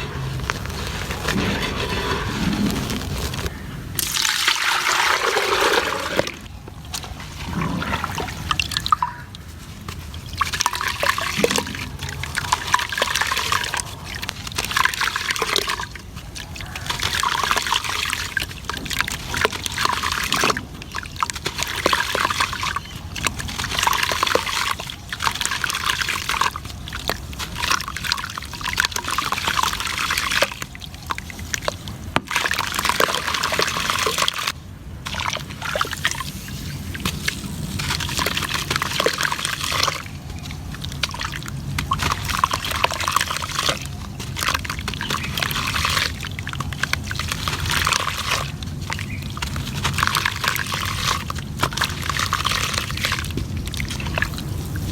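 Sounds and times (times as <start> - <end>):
water sloshing: 0.0 - 54.9
cement crumbling in water: 10.4 - 16.0.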